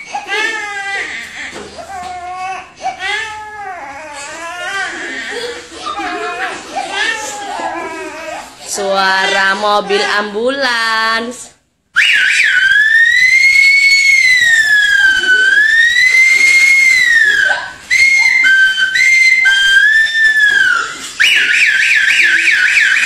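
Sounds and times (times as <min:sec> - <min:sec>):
person whistling siren imitation: 0:12.0 - 0:23.0.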